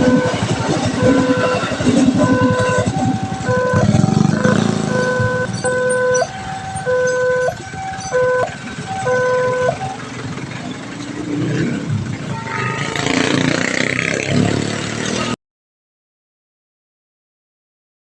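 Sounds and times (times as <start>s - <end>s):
two-tone level crossing alarm: 0.0s - 10.0s
heavy rumble of passing traffic: 0.0s - 15.4s.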